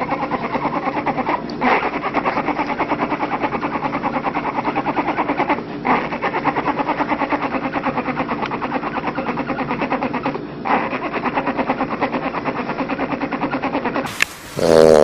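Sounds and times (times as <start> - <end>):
pet snoring: 14.5 - 15.0.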